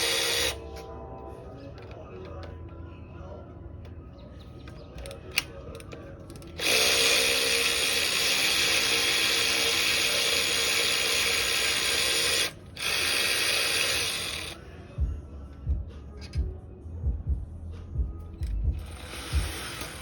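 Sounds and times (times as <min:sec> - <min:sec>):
power tool spinning bolts: 0:00.0 - 0:00.6, 0:05.0 - 0:14.6, 0:18.4 - 0:20.0.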